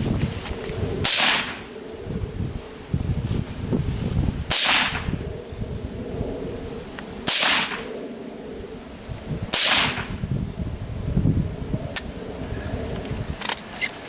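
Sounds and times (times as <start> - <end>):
low rumble: 0.0 - 13.5
rifle shots: 1.0 - 1.7, 4.5 - 5.1, 7.2 - 7.9, 9.5 - 10.1.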